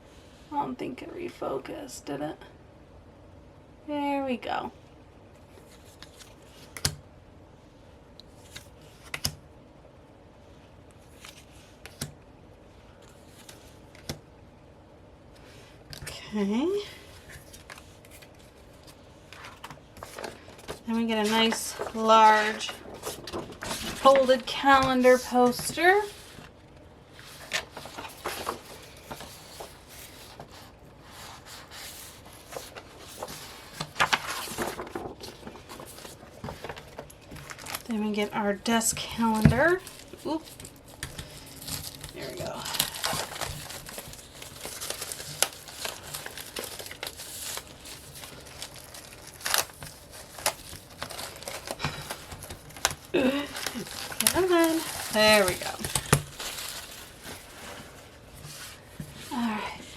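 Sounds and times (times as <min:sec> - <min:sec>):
paper rustling and crinkling: 0:05.5 - 0:06.9, 0:11.0 - 0:12.1, 0:13.0 - 0:14.2, 0:17.0 - 0:59.6.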